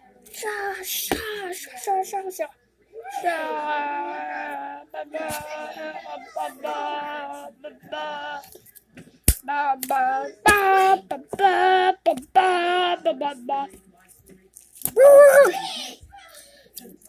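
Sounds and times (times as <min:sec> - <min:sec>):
child singing held notes: 0:03.2 - 0:08.6.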